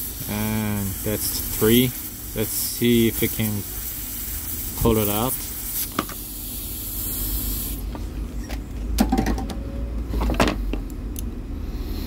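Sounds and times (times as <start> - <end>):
hot air blower hissing: 0.0 - 8.4, 11.5 - 12.0
steady low hum: 0.0 - 12.0.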